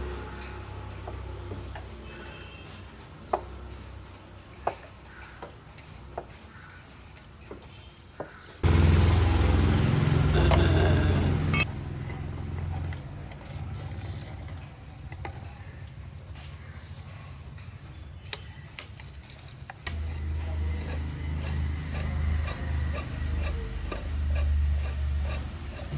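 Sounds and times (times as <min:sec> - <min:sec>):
motor running loudly: 0:08.6 - 0:14.4, 0:19.9 - 0:25.9.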